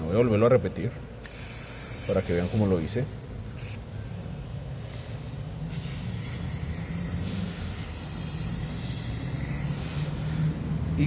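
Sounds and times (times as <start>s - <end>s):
steady low hum: 0.0s - 11.0s
aerosol can hissing: 1.3s - 2.6s, 5.7s - 10.1s.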